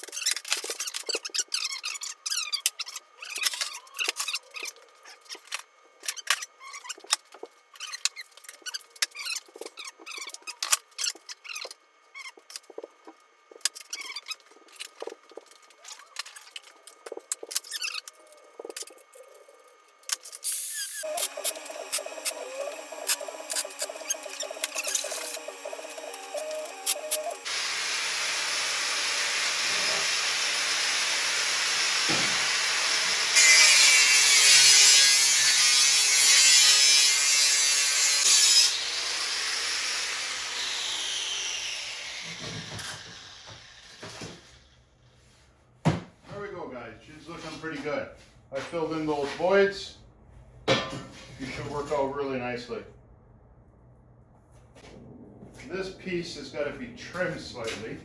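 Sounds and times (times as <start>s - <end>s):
steady power tool noise: 20.4s - 44.8s.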